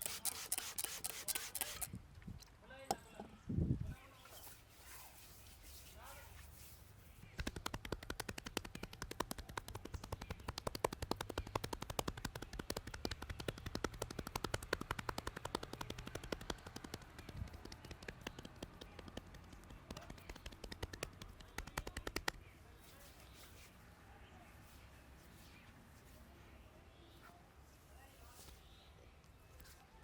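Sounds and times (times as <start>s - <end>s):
rapid tapping slaps on head: 7.3s - 22.4s.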